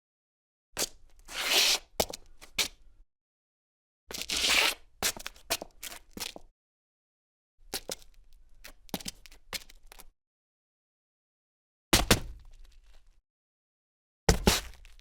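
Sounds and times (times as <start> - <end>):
footsteps on gritty cement: 0.8 - 2.8, 4.1 - 6.5, 7.7 - 10.1, 14.3 - 15.0.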